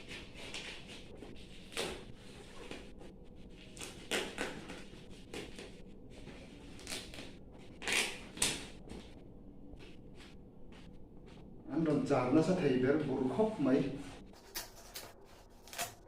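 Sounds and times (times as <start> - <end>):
packaging rustling and scraping: 14.3 - 16.0.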